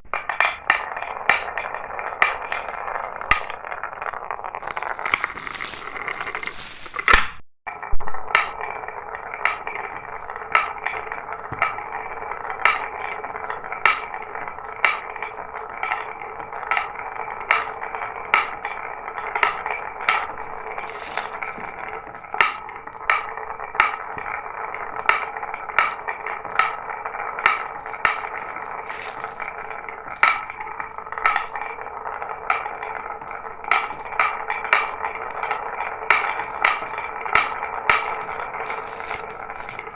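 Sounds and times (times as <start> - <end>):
marbles clicking and clacking: 0.0 - 39.9
marbles rolling on track: 0.0 - 39.9.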